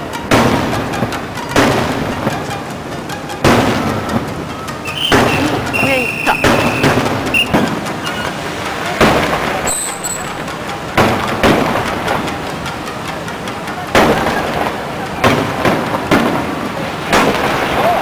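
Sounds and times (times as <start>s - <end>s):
crowd chatter: 0.0s - 18.0s
fireworks booming: 0.1s - 2.6s, 3.4s - 8.2s, 8.8s - 12.5s, 13.9s - 18.0s.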